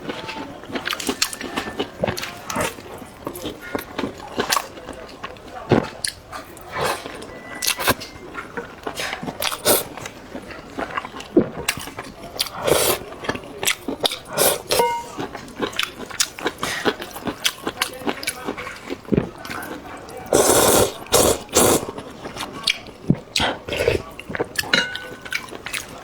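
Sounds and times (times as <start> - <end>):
wet chewing and lip smacks: 8.8 - 26.0.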